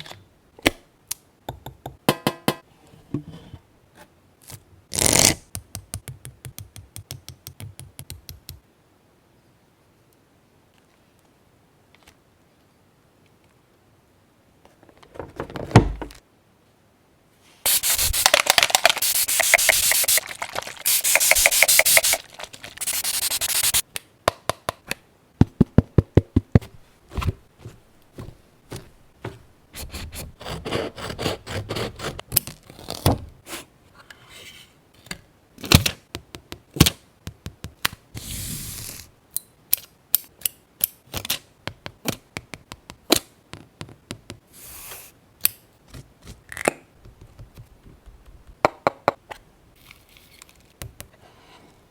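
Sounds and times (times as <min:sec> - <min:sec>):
rubbing and scraping on paper: 0:17.6 - 0:23.8
short scratches: 0:17.7 - 0:23.8.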